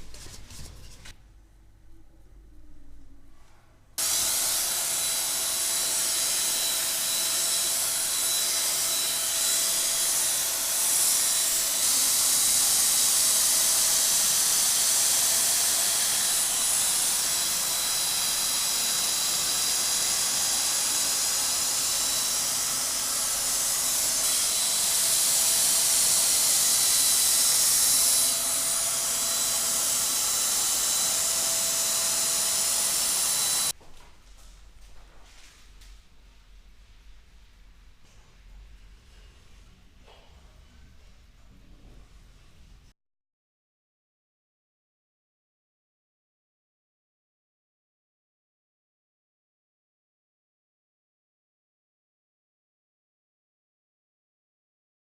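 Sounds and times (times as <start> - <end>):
power tool whining: 4.0 - 33.7.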